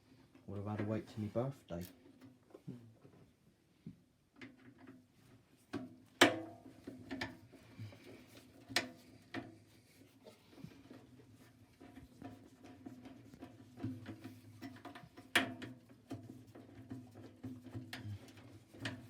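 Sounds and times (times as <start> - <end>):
parts and tools knocking and clicking: 4.4 - 5.0, 5.7 - 9.6, 11.7 - 19.0.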